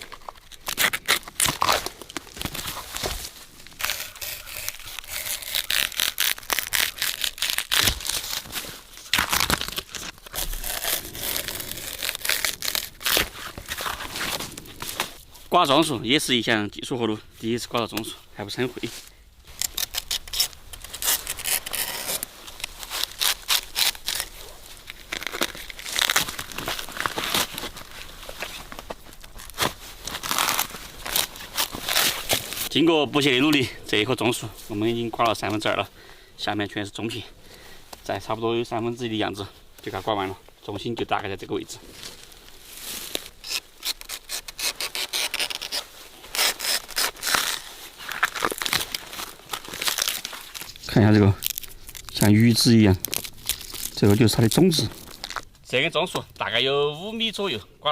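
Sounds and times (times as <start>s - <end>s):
palm fibre rasping and ripping: 0.0s - 15.5s, 18.7s - 35.7s, 41.8s - 55.6s.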